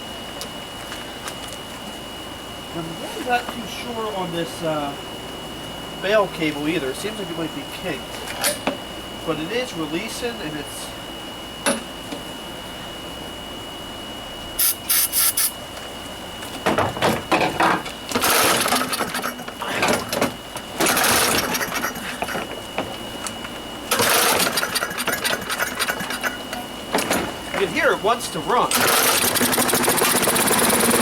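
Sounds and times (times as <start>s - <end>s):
lawnmower recoil starter pulls: 18.1s - 20.2s, 20.8s - 22.4s, 23.9s - 26.4s, 28.7s - 31.0s.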